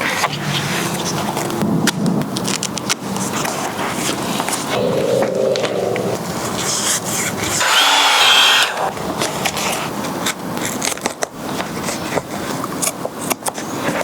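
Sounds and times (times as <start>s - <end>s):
power tool whirring: 7.6s - 8.9s.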